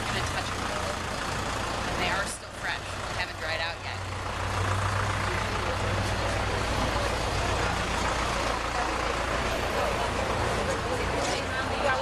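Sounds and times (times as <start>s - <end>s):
engine running steadily: 0.0s - 12.0s.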